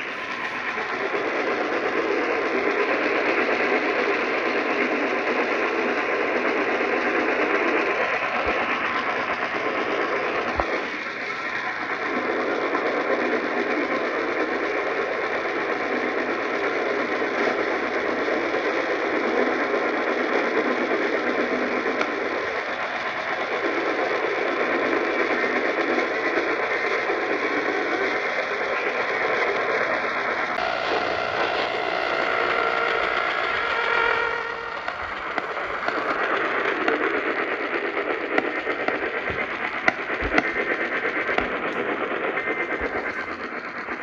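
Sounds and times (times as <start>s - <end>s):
radio static hiss: 0.0s - 1.0s, 30.6s - 44.0s.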